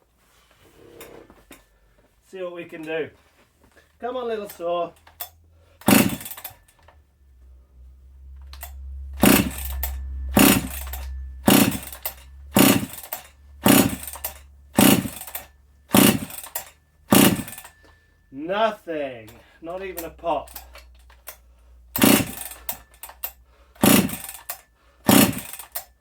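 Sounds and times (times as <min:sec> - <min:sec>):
low hum: 0:03.6 - 0:25.6
engine turning over: 0:04.0 - 0:26.0
chainsaw recoil starter pulls: 0:04.1 - 0:07.0, 0:08.5 - 0:17.8, 0:19.3 - 0:25.9.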